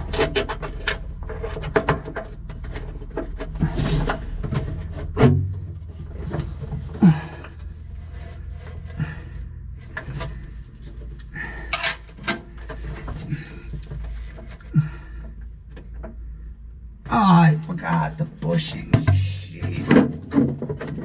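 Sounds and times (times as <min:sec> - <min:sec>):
person grunting: 0:07.0 - 0:07.5.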